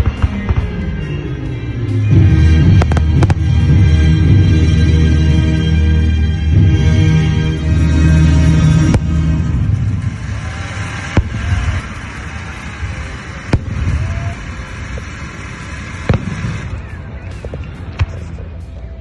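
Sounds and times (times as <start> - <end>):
fireworks bangs: 0.0 - 18.6
background music: 0.0 - 19.0
fireworks crackles: 0.0 - 19.0.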